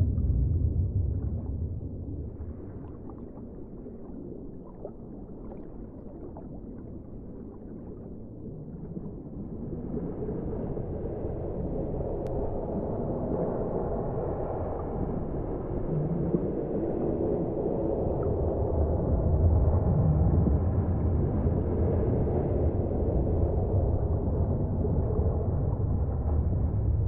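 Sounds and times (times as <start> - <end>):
low underwater rumble: 0.0 - 27.0.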